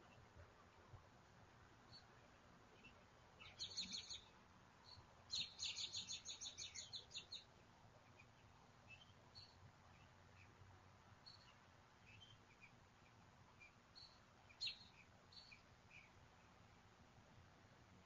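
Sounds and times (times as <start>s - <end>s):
songbird singing: 1.8s - 16.8s
faint bird chirps: 2.8s - 10.6s, 11.2s - 16.2s.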